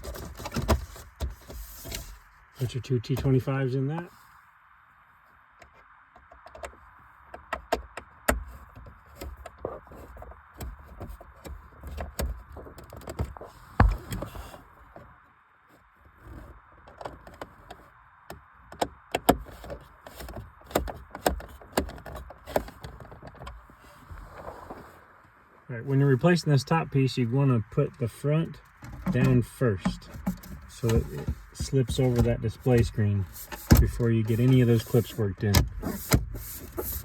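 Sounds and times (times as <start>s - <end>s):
plastic clicks and knocks: 28.6s - 37.0s.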